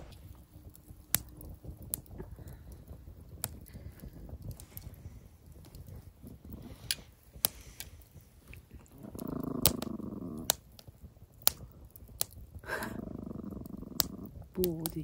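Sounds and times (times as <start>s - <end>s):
campfire crackling and popping: 0.0s - 15.0s
dog growling low: 1.1s - 14.6s.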